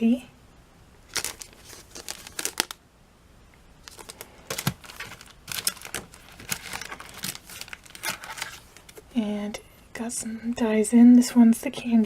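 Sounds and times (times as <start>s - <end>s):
packaging crinkling: 1.1s - 2.8s, 3.8s - 9.0s.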